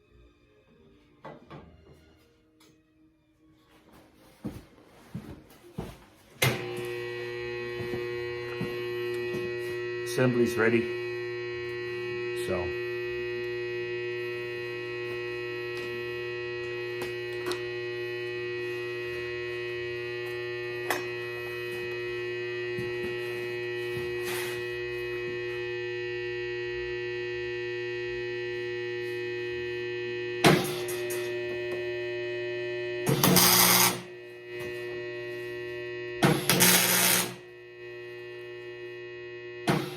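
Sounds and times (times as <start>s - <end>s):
electrical hum of welding equipment: 6.4s - 39.9s
arc welding burst: 33.0s - 34.1s, 36.2s - 37.4s.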